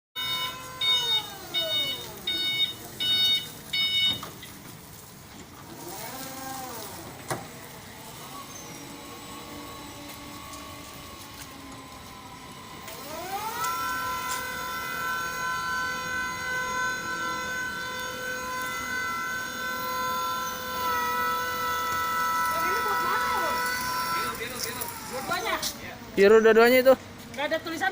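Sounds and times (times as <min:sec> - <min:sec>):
warning alarm beeps: 0:00.2 - 0:04.3
machine engine and hydraulics whining: 0:00.2 - 0:27.9.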